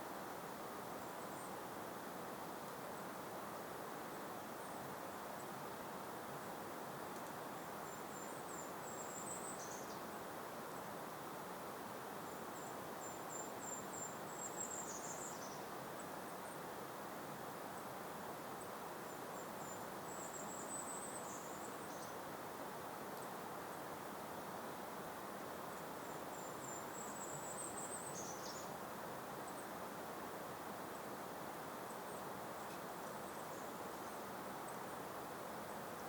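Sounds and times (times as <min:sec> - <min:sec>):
gentle breeze hiss: 0:00.0 - 0:36.0
small songbird singing: 0:07.1 - 0:10.9, 0:12.3 - 0:16.7, 0:18.3 - 0:22.3, 0:25.4 - 0:29.9, 0:31.8 - 0:36.0.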